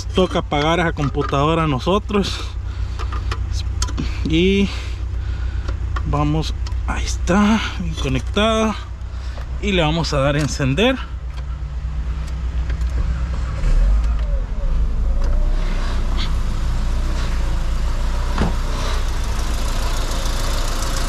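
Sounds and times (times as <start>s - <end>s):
car engine starting and idling: 0.0s - 21.0s.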